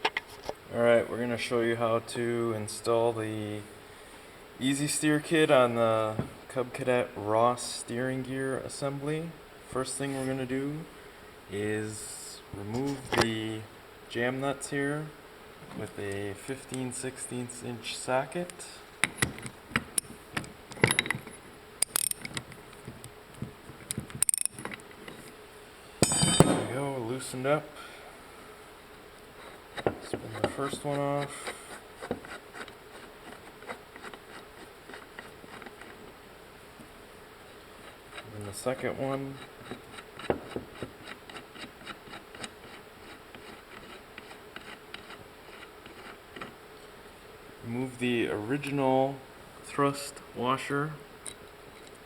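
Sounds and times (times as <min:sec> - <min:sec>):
metal nut ticking and scraping: 0:19.0 - 0:23.0, 0:23.9 - 0:25.3, 0:26.0 - 0:26.8, 0:32.1 - 0:36.0, 0:39.2 - 0:46.5
socket wrench clicking: 0:21.8 - 0:22.5, 0:24.2 - 0:24.8.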